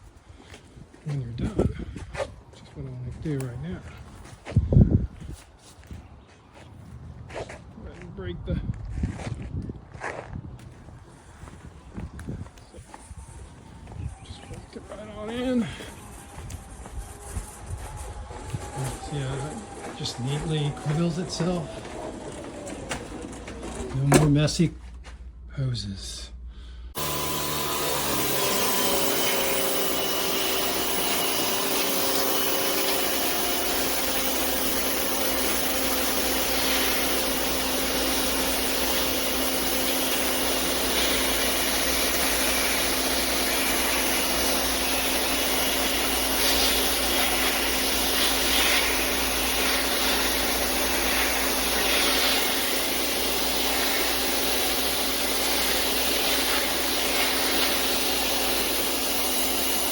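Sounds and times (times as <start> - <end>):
pressure washer motor drone: 12.9 - 24.4, 26.9 - 59.9
water jet hissing: 26.9 - 59.9.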